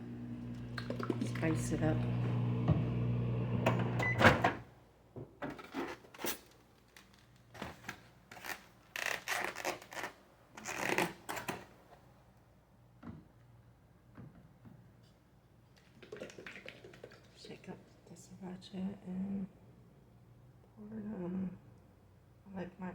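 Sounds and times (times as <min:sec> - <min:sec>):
microwave oven humming: 0:00.0 - 0:04.6.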